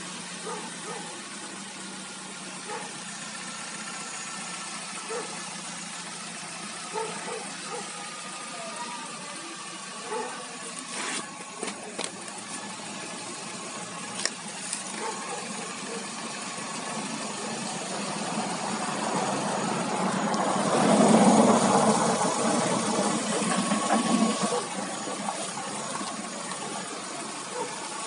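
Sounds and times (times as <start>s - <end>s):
car engine and road noise: 0.0s - 28.0s.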